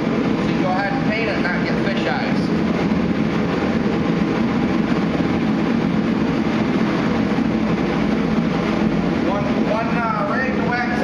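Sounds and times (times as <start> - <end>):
heater droning: 0.0 - 11.0.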